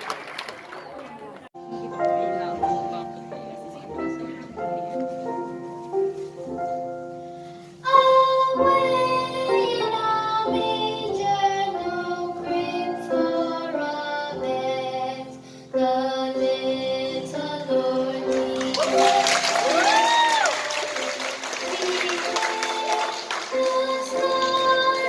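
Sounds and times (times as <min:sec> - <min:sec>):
instrumental accompaniment: 0:01.6 - 0:15.2.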